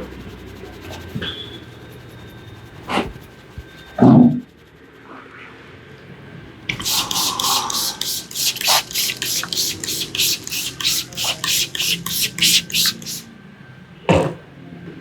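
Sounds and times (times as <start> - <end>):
hands brushing over hair: 6.7 - 13.3.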